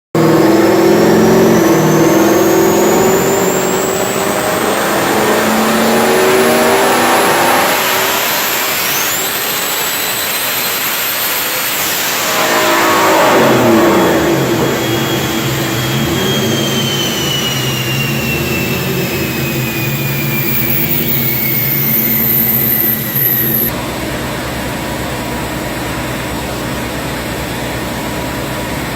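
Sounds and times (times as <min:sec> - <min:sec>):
car engine revving: 0:00.1 - 0:23.7
turbo whistle: 0:00.2 - 0:23.7.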